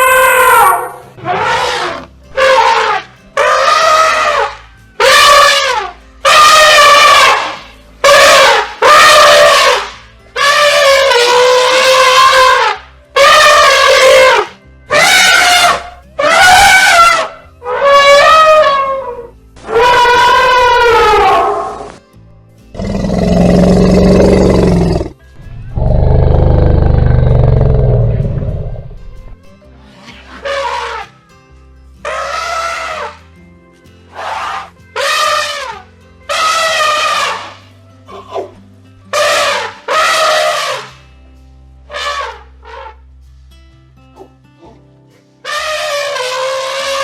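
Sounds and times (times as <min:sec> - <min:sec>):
elephant trumpeting: 0:00.0 - 0:22.0, 0:22.8 - 0:29.0, 0:30.3 - 0:31.1, 0:32.0 - 0:33.2, 0:34.1 - 0:41.0, 0:41.9 - 0:43.0, 0:45.5 - 0:47.0
elephant roaring: 0:22.8 - 0:29.0.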